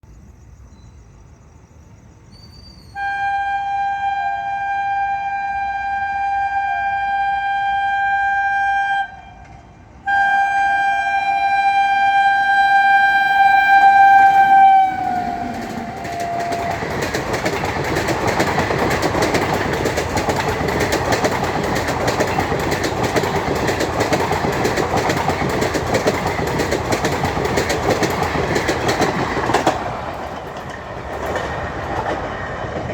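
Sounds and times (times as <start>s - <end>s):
locomotive horn blasts: 3.0s - 17.2s
train wheels clattering on rails: 14.1s - 32.9s.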